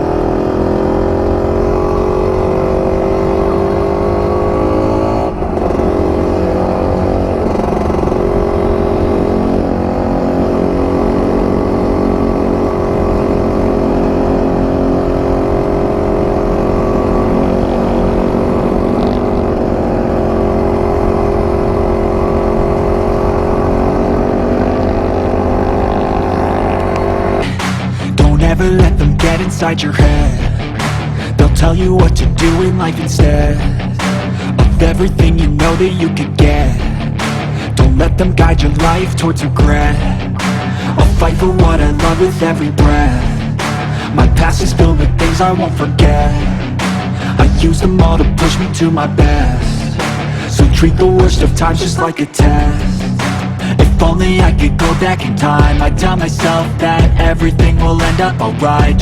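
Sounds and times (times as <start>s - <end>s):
dirt bike engine running: 0.0s - 59.0s.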